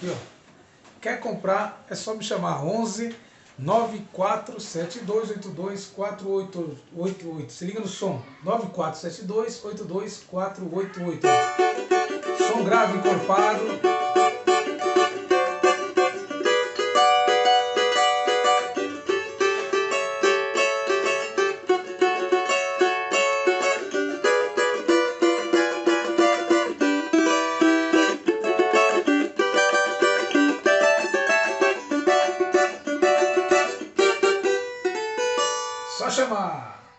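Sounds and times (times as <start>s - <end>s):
cavaquinho strumming chords: 10.8s - 36.1s.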